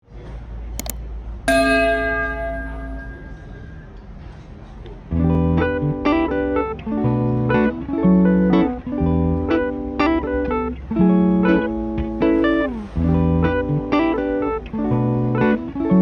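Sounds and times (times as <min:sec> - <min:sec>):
ringing chord: 0:01.5 - 0:03.9.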